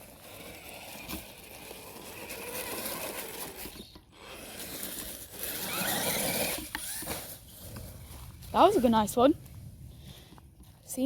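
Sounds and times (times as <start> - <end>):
rc car motor whirring: 0.0 - 8.2.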